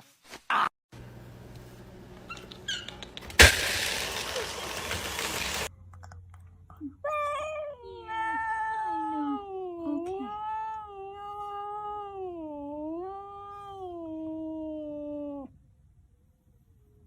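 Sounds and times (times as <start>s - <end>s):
cat yowling: 7.1s - 15.5s.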